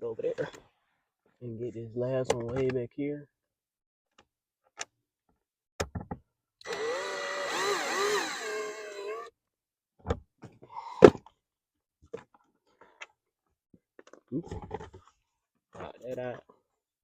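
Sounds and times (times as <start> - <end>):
power driver motor running: 6.6 - 9.3.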